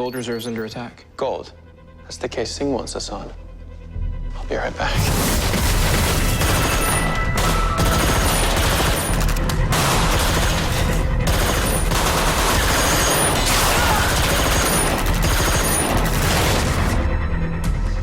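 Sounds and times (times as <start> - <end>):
action soundtrack music: 0.0 - 18.0
rapid gunfire: 5.1 - 17.0.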